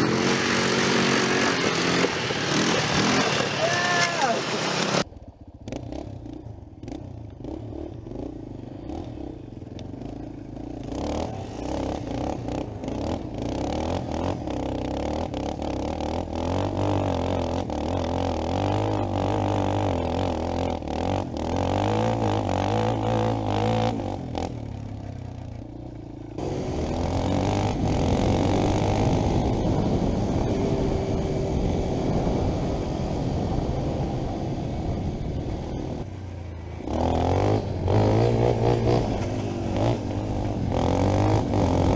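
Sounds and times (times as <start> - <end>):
atv engine revving: 0.0 - 41.9.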